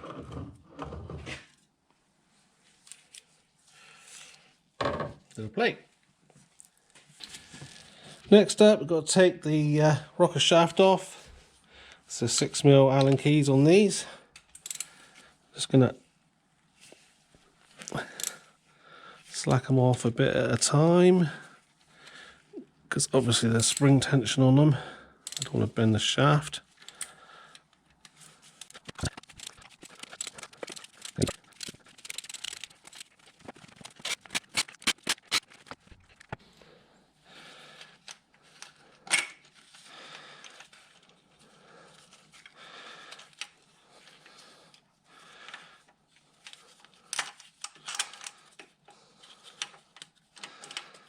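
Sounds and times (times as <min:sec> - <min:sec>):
ratchet clicking: 0:25.2 - 0:25.5, 0:29.4 - 0:33.0, 0:34.0 - 0:35.5.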